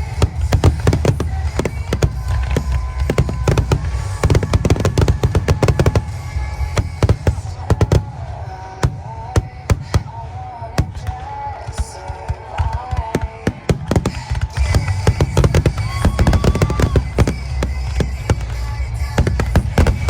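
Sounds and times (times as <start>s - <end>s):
low rumble: 0.0s - 9.3s
fireworks cracks and bangs: 0.0s - 20.0s
music: 0.0s - 20.0s.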